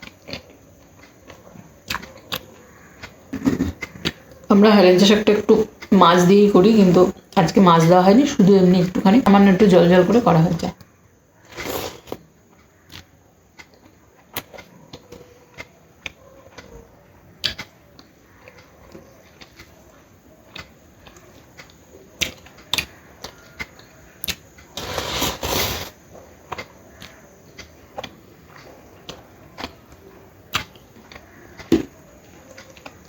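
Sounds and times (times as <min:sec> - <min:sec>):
person chewing close up: 0:00.0 - 0:04.4, 0:12.6 - 0:24.7, 0:26.4 - 0:33.0.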